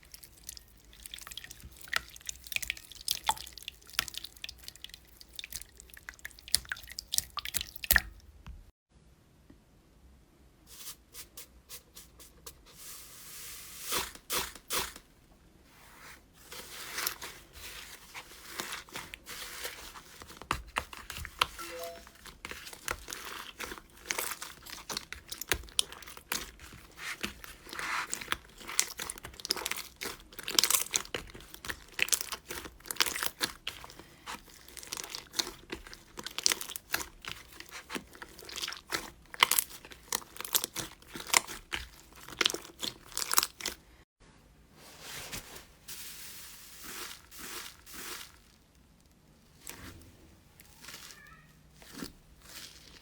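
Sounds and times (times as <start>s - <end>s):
crunchy slime crackling: 0.0s - 8.2s, 22.2s - 44.0s, 46.0s - 53.0s.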